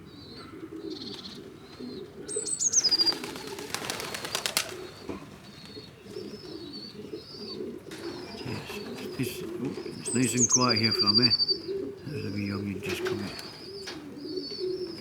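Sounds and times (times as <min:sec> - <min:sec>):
pigeons cooing: 0:00.0 - 0:15.0
small birds chirping: 0:00.0 - 0:15.0
pigeon wingbeats clattering: 0:02.8 - 0:05.8.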